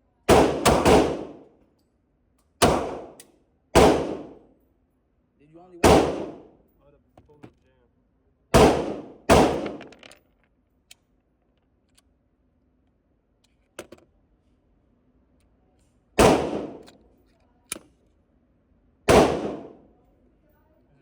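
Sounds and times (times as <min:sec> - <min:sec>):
gunshots echoing indoors: 0:00.3 - 0:01.5, 0:02.6 - 0:03.2, 0:03.8 - 0:04.4, 0:05.8 - 0:06.6, 0:08.5 - 0:09.9, 0:16.2 - 0:16.9, 0:19.0 - 0:19.9.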